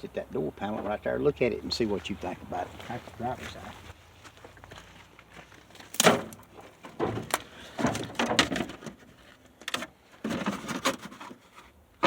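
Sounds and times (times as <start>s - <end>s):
door panel rattles and scrapes: 6.0s - 9.0s.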